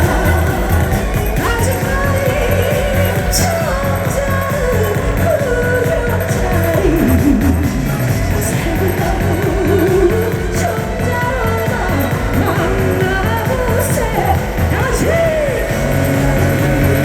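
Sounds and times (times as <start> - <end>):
upbeat dance music: 0.0 - 17.0.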